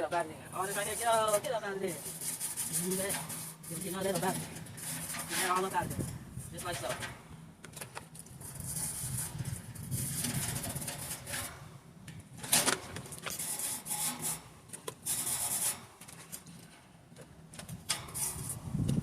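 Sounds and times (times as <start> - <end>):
scrubbing wire bird cage: 0.5 - 7.1, 13.3 - 14.4, 15.0 - 15.8, 17.9 - 18.7.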